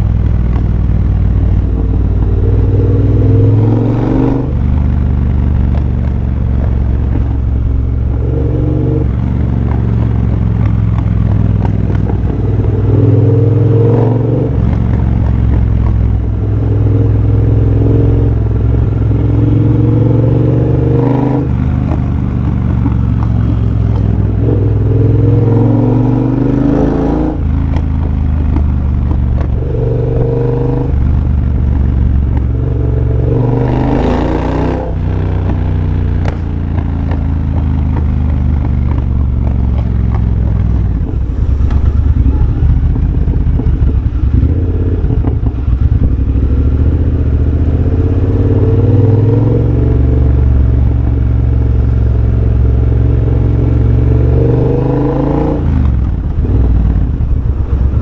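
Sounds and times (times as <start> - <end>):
motorcycle engine accelerating: 0.0 - 58.0.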